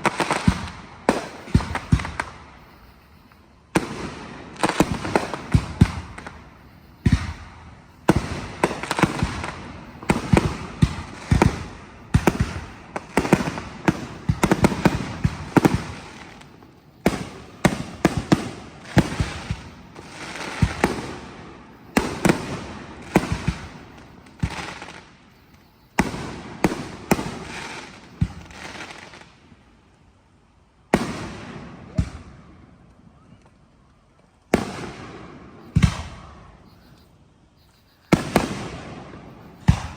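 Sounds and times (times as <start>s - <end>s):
fireworks bursting with echo: 0.0s - 29.6s, 30.9s - 33.6s, 34.5s - 39.9s.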